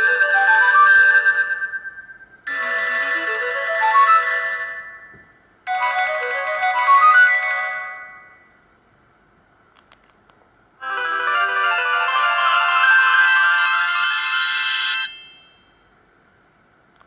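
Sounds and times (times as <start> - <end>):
polyphonic phone ringtones: 2.5 - 4.9.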